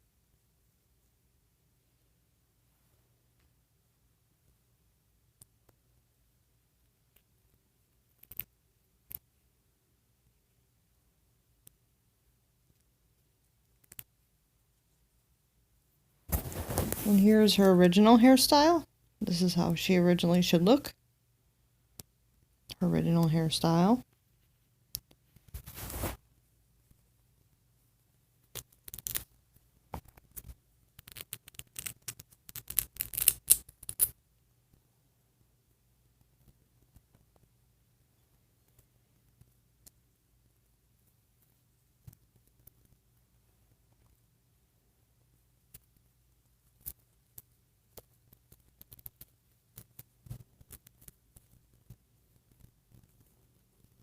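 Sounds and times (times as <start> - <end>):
faint low hum: 0.0 - 54.0
plastic doll pieces clicking: 8.1 - 8.5, 28.6 - 29.3, 31.0 - 34.2.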